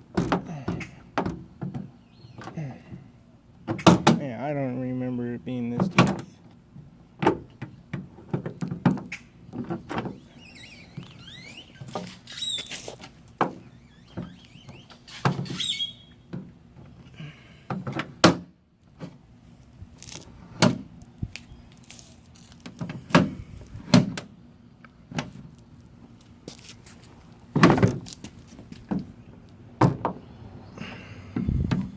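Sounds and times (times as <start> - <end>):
short squeaks: 10.1 - 16.2.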